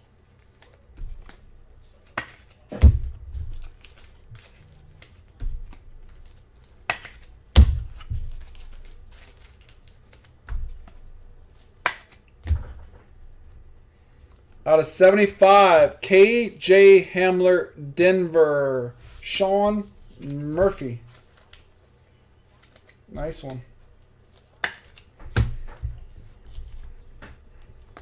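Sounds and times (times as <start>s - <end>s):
cards tapping and clicking: 0.4s - 11.0s, 11.6s - 12.8s, 24.3s - 28.0s
cards thumping down: 2.0s - 11.0s, 11.6s - 13.0s, 24.4s - 28.0s.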